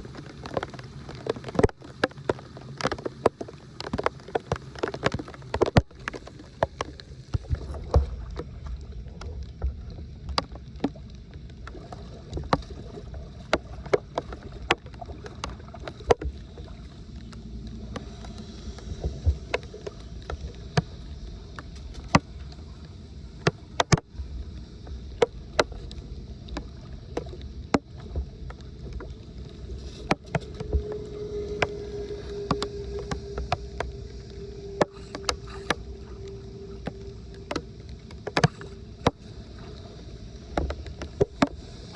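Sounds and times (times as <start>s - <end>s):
water sloshing and splashing: 0.0s - 41.9s
low rumble: 5.3s - 41.9s
steady hum: 11.7s - 41.9s
sharp knocks and clicks: 36.8s - 39.2s.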